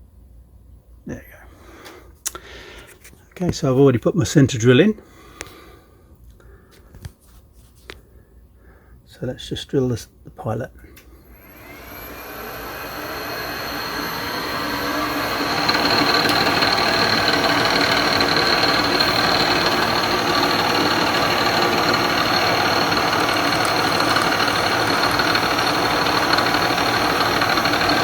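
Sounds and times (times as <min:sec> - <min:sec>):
milling machine whirring: 0:11.4 - 0:28.0
drill boring into plastic: 0:11.5 - 0:28.0.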